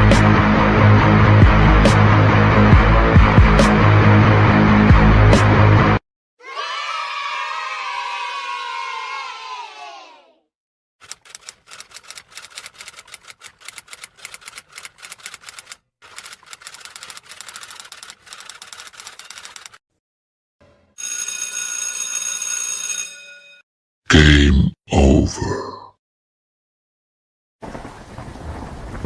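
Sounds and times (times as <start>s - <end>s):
rapid typewriter keystrokes: 11.0s - 19.8s
bell ringing: 21.0s - 23.6s.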